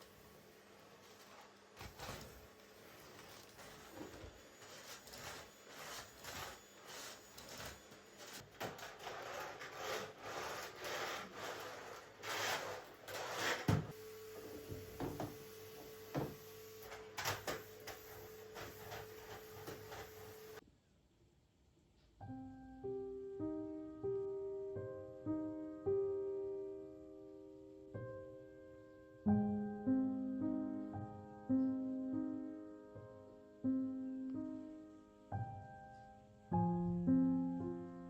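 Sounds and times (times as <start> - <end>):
objects rubbing and scraping: 1.0 - 13.9.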